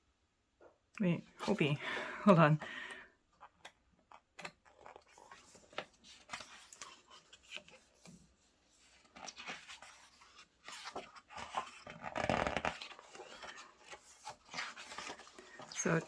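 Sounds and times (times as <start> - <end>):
book pages turning: 3.4 - 16.0.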